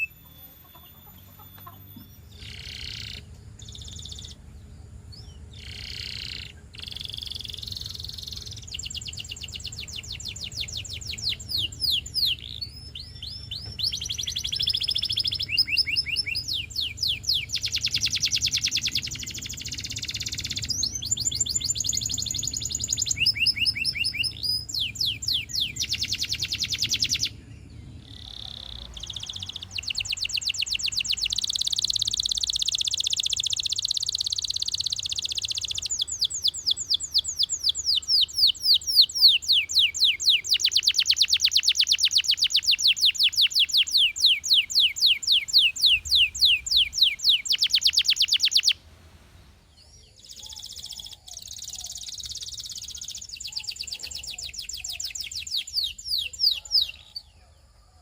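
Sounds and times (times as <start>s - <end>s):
canary singing trills: 0.0s - 57.8s.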